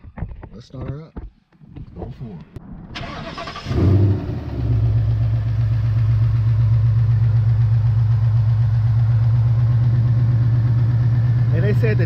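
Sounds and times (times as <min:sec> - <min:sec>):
car engine idling: 0:03.0 - 0:12.0.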